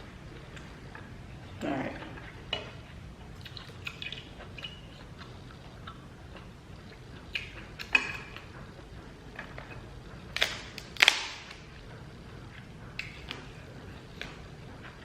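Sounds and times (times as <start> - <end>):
chewing with wet smacks: 0.0 - 15.0.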